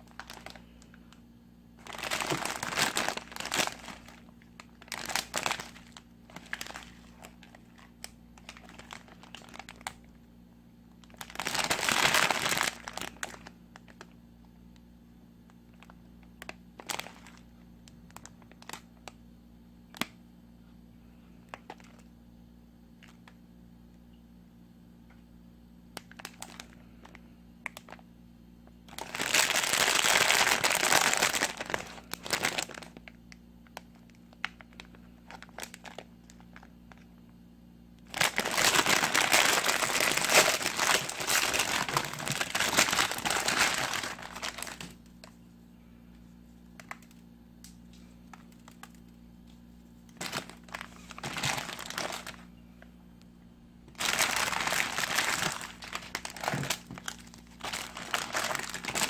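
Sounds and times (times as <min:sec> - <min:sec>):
plastic packaging crinkling: 0:00.0 - 0:01.2, 0:01.8 - 0:10.2, 0:10.9 - 0:14.2, 0:15.7 - 0:19.2, 0:21.5 - 0:22.1, 0:25.9 - 0:28.0, 0:28.8 - 0:37.3, 0:38.0 - 0:45.4, 0:46.5 - 0:52.5, 0:53.9 - 0:59.0.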